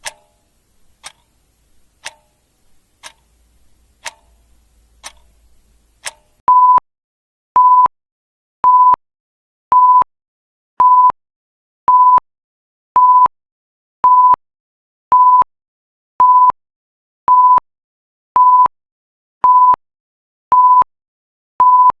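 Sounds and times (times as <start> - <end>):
electronic timer alarm beeps: 6.5 - 6.8, 7.6 - 7.9, 8.6 - 9.0, 9.7 - 10.1, 10.8 - 11.2, 11.9 - 12.2, 13.0 - 13.3, 14.0 - 14.4, 15.1 - 15.5, 16.2 - 16.6, 17.3 - 17.6, 18.4 - 18.7, 19.4 - 19.8, 20.5 - 20.9, 21.6 - 22.0.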